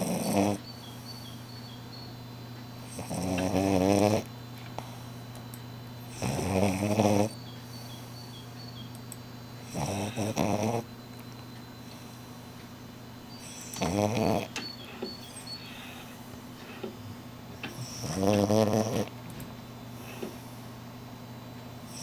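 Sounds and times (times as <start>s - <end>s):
dog snoring: 0.0s - 1.1s, 2.8s - 5.1s, 6.0s - 7.4s, 9.6s - 10.9s, 13.4s - 14.6s, 17.6s - 19.2s, 21.8s - 22.0s.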